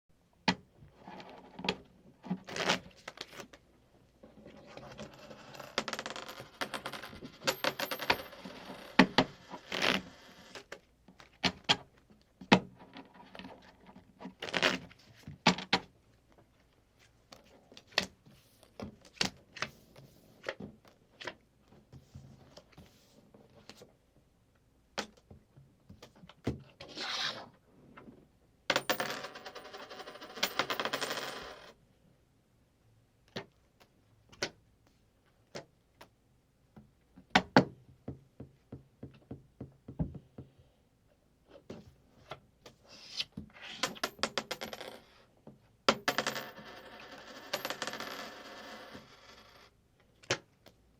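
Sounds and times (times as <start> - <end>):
coins clinking: 5.6 - 9.0, 28.7 - 31.6.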